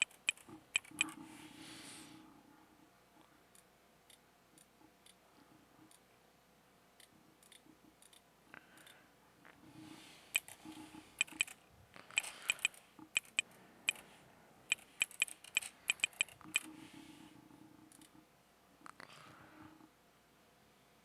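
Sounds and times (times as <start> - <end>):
computer mouse clicking: 0.0 - 1.3, 10.3 - 14.0, 14.7 - 16.8, 17.9 - 18.2.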